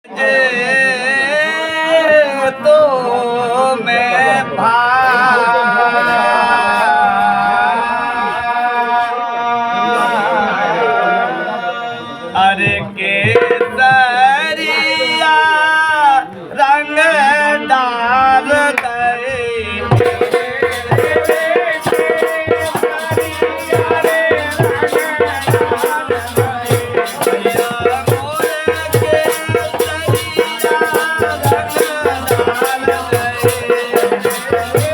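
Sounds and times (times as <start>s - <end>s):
fast drum and jingles rhythm: 12.4s - 14.4s, 19.7s - 34.9s.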